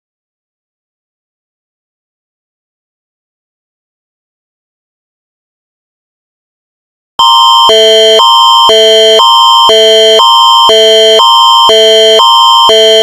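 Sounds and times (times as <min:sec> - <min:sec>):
emergency alert signal chords: 0:07.2 - 0:13.0
steady high tone: 0:07.2 - 0:13.0.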